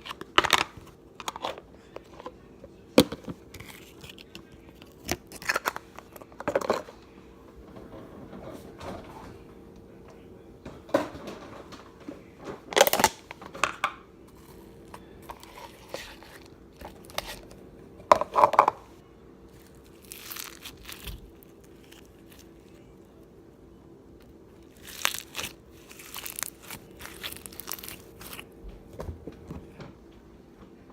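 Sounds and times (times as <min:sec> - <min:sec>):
slime squishing and popping: 0:19.5 - 0:22.5, 0:24.6 - 0:28.4.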